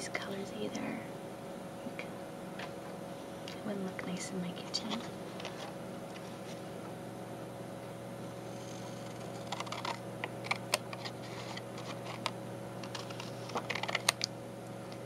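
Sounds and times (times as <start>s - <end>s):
steady low hum: 0.0s - 15.0s
scissors cutting thick paper: 8.7s - 14.2s.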